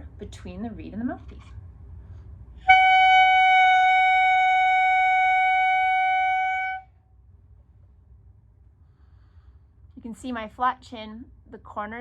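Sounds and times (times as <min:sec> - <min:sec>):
clarinet mouthpiece high tone: 0:02.7 - 0:06.9.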